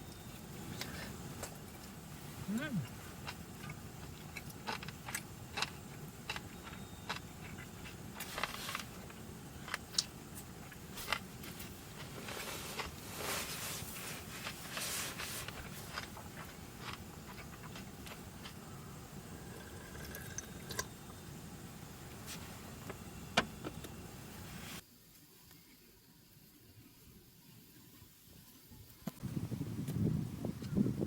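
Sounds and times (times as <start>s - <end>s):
low steady hum: 0.0s - 31.0s
rustling: 6.6s - 9.8s, 10.4s - 18.7s.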